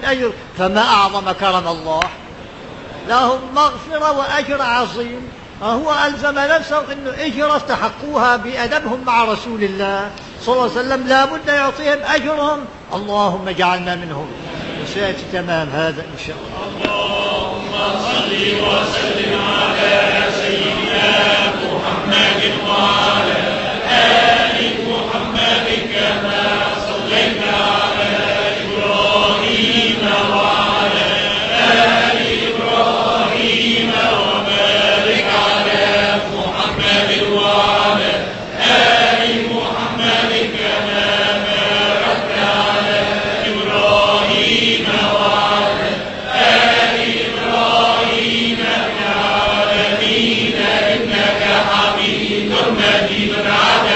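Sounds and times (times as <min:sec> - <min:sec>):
group chanting a prayer: 0:14.2 - 0:53.9.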